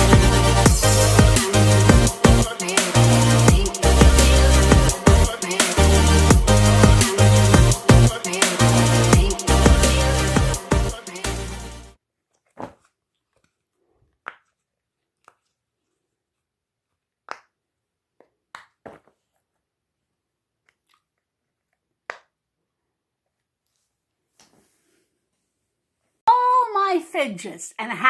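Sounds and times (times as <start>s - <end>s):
music: 0.0s - 12.0s.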